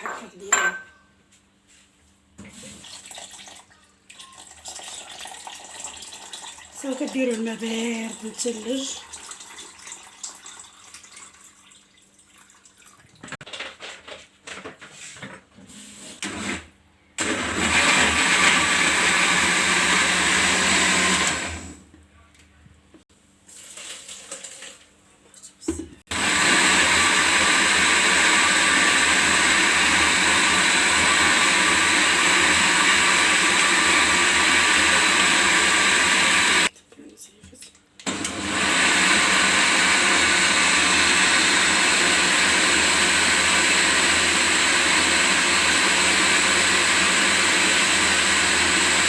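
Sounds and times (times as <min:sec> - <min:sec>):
blender grinding: 0:16.2 - 0:21.8, 0:26.1 - 0:36.7, 0:38.0 - 0:49.0.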